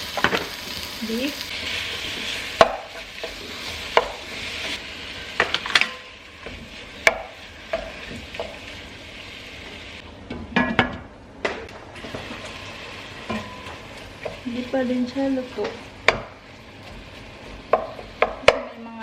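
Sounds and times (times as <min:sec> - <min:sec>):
meat sizzling in a pan: 0:00.0 - 0:10.0, 0:12.0 - 0:19.0.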